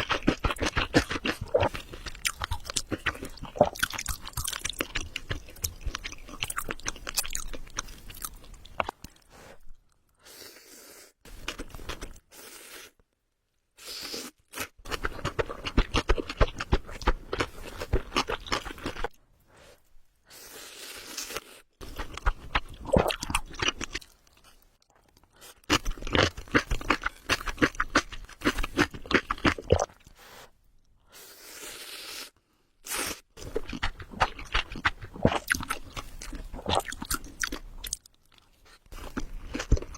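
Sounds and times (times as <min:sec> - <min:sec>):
wet crunchy chewing: 0:00.0 - 0:09.3, 0:14.6 - 0:19.2, 0:21.8 - 0:30.1, 0:33.4 - 0:39.9.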